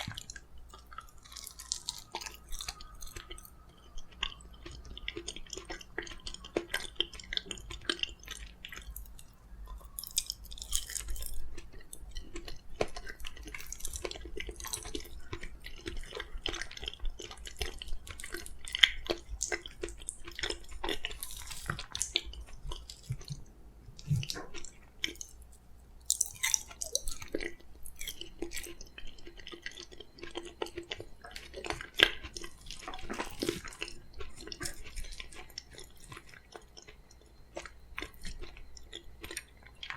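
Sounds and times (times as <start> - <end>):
wet chewing mouth sounds: 0.0 - 39.9.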